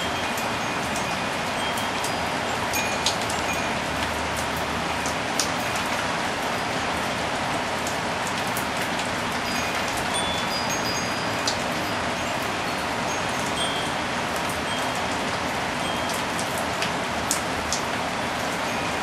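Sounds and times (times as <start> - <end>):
raindrops clicking: 0.0 - 6.0, 14.3 - 17.9
wind chimes tinkling: 0.0 - 7.0, 9.1 - 19.0
rain shower: 0.0 - 19.0.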